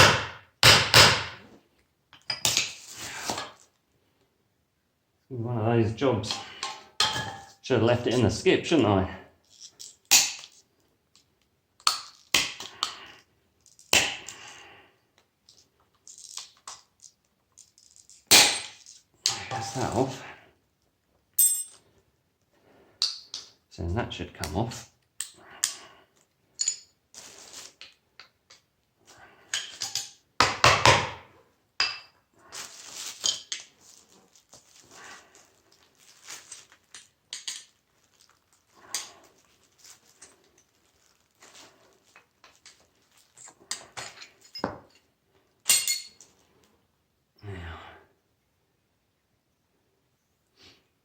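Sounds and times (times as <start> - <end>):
metal parts clinking and knocking: 9.4 - 10.6, 15.5 - 20.0, 21.4 - 21.8, 26.6 - 27.0, 29.5 - 31.1, 36.1 - 46.4.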